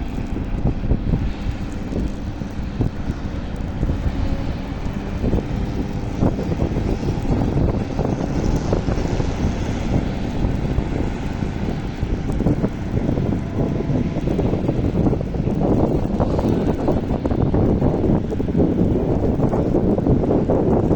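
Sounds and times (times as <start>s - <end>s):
heavy engine rumble: 0.0s - 20.9s
wind buffeting microphone: 0.0s - 20.9s.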